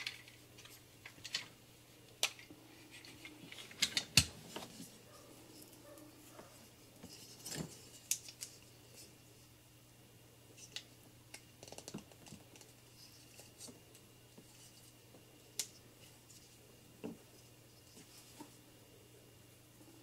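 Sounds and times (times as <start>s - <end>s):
plastic toy parts clicking: 0.0s - 1.5s, 2.2s - 4.3s.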